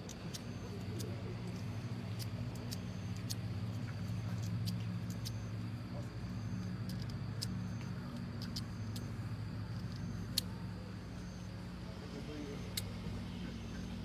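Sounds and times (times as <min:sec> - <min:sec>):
sharp clicks: 0:00.0 - 0:05.6, 0:06.5 - 0:11.5, 0:12.6 - 0:13.1
low motor hum: 0:00.0 - 0:14.0.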